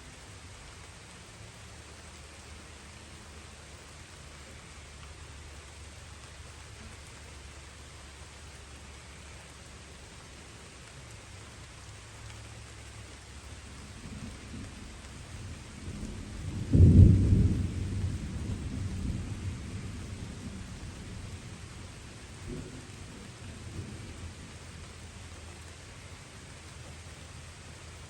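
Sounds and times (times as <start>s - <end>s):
light rain: 0.0s - 28.0s
thunder rumbling and clapping: 13.6s - 25.6s.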